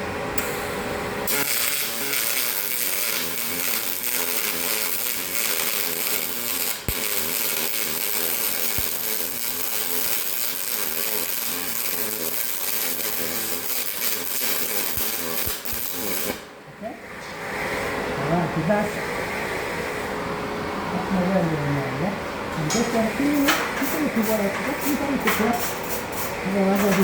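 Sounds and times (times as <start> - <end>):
welding arc hissing: 0.4 - 16.5, 22.8 - 27.0.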